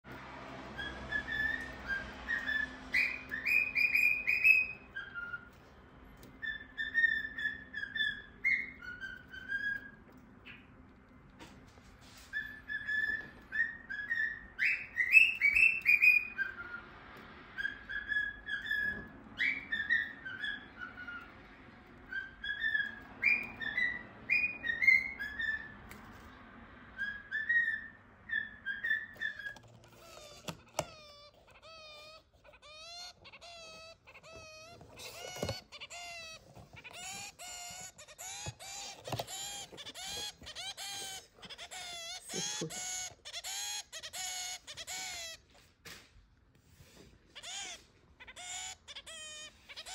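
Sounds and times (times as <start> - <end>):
rapid nasal finch calls: 28.8 - 45.4, 47.4 - 49.9.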